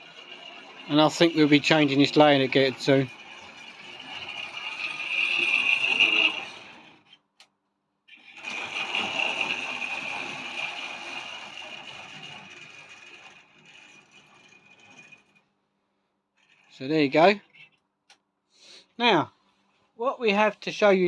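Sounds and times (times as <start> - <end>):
wheels rattling on rail: 0.0 - 7.0, 8.4 - 13.4
electric motor whining: 0.9 - 7.0.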